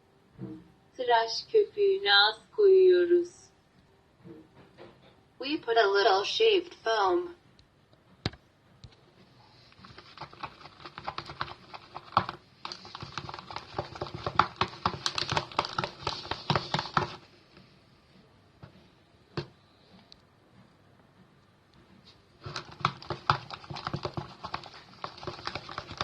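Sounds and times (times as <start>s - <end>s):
slime being stirred squelching: 9.5s - 17.3s, 22.4s - 26.0s.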